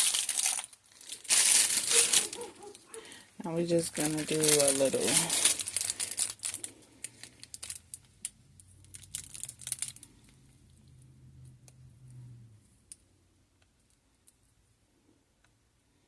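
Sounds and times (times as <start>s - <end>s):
plastic piping bag crinkling: 0.0s - 10.4s.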